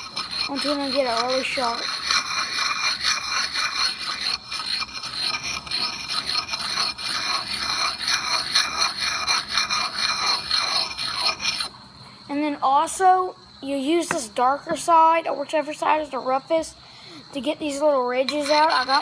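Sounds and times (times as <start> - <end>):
sharpening stone scraping axe edge: 0.0 - 11.7, 17.7 - 19.0.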